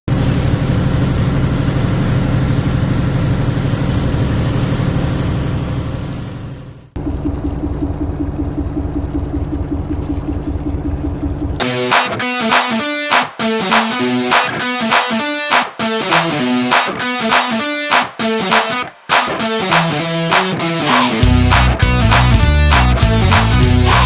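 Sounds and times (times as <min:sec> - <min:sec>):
boat engine running: 0:07.0 - 0:11.6
guitar music: 0:11.6 - 0:24.0.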